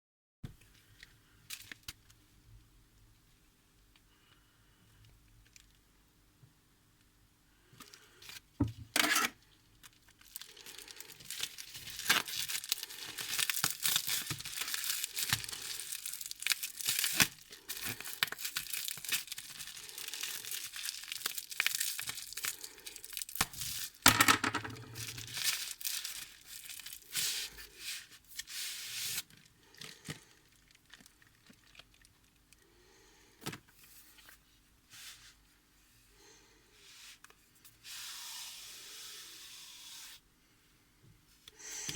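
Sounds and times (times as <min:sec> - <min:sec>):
packaging ripping and rustling: 0:09.0 - 0:24.0, 0:24.7 - 0:32.4.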